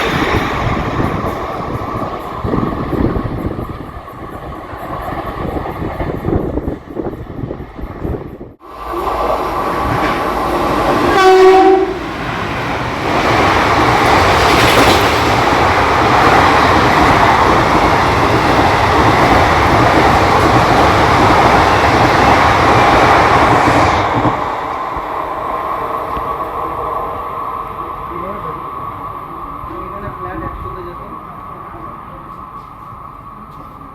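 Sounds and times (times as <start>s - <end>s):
locomotive horn blast: 11.0s - 12.1s.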